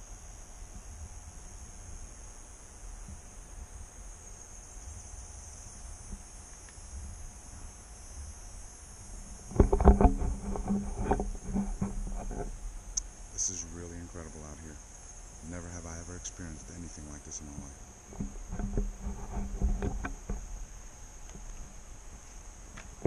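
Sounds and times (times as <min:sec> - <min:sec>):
insects droning: 0:00.0 - 0:23.0
person speaking: 0:13.4 - 0:14.8, 0:15.4 - 0:17.8.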